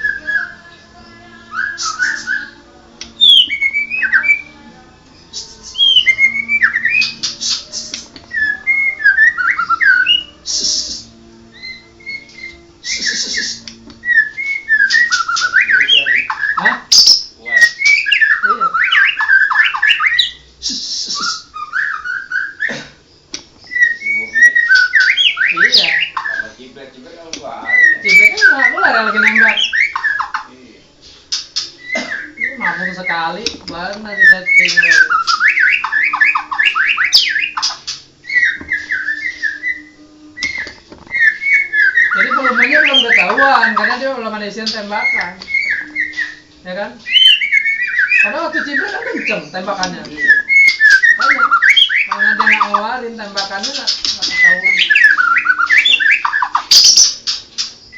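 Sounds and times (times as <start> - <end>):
bird singing whistled phrases: 0.0 - 0.7, 1.5 - 4.6, 5.3 - 22.7, 23.6 - 26.6, 27.6 - 30.4, 31.6 - 57.9
bird harsh hissing rasp: 1.8 - 2.5, 6.9 - 8.1, 10.4 - 11.2, 12.9 - 13.8.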